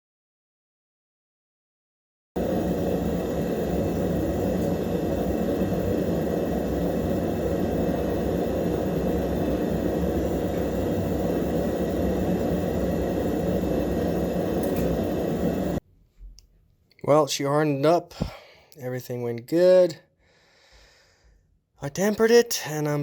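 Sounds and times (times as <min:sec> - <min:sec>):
forge roaring: 0:02.4 - 0:15.8.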